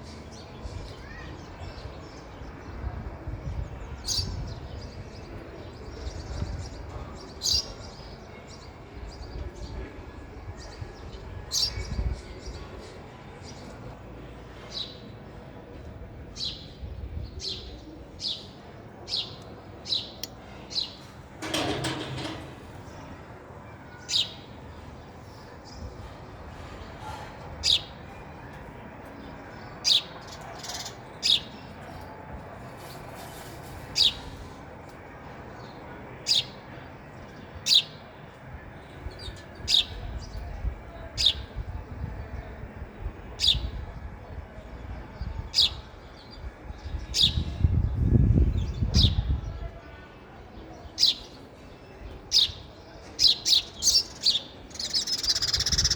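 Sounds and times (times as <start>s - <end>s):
sparrow chirping: 52.3s - 55.9s.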